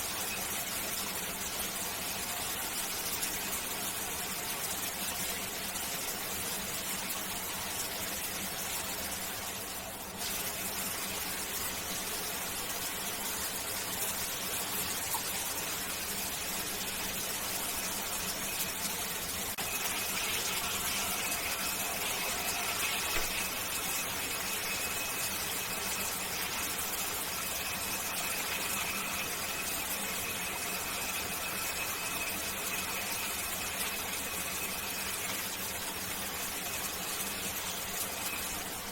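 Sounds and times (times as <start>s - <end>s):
shower water spray hissing: 10.1s - 38.9s
faint high whistling squeal: 19.6s - 38.9s.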